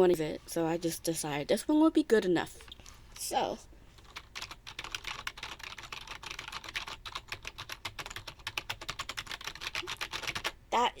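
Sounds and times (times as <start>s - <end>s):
rapid typing on a keyboard: 4.0s - 10.6s.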